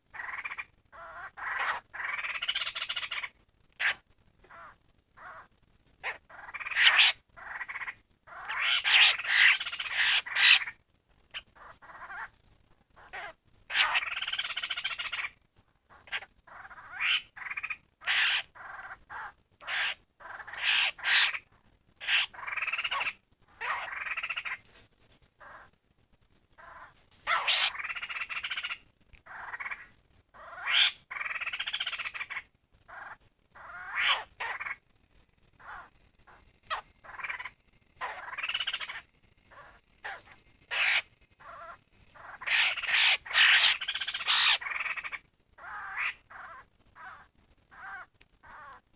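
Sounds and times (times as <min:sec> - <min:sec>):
bird calling sharp notes: 0:42.3 - 0:44.6.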